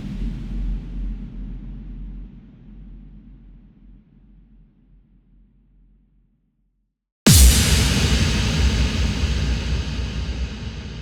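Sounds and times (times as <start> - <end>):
explosion deep rumble: 7.3 - 11.0.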